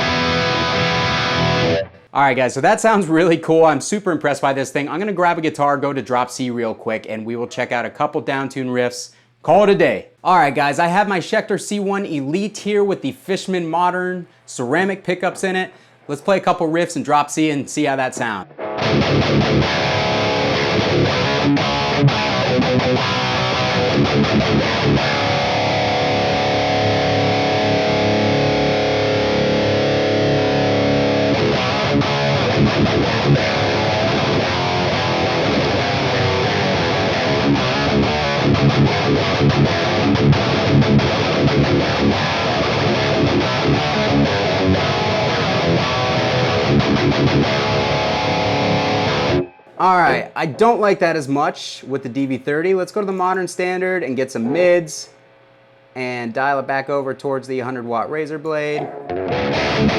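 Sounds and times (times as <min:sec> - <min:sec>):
distorted electric guitar riffs: 0:00.0 - 0:02.2, 0:18.1 - 0:50.8, 0:58.7 - 0:59.9.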